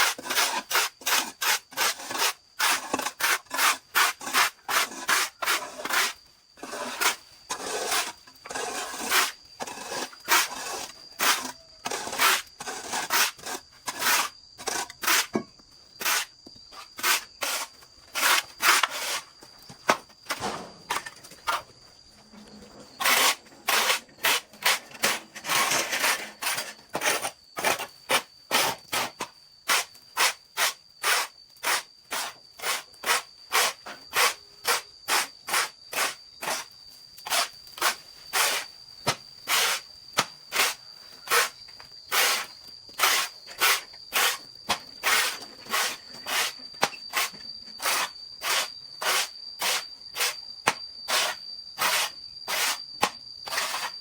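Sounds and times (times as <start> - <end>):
hand saw cutting wood: 40.5 - 41.5, 42.1 - 44.4, 45.0 - 50.4.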